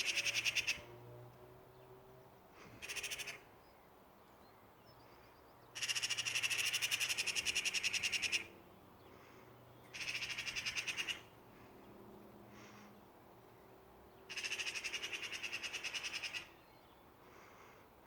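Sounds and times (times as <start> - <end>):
bird chattering call: 5.8 - 8.5, 9.9 - 11.3, 14.3 - 16.5.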